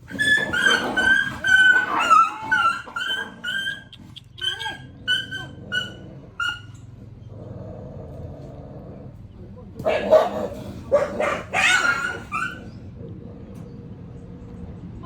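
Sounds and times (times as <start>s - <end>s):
dog yelping and whimpering: 0.0s - 6.8s, 10.9s - 12.8s.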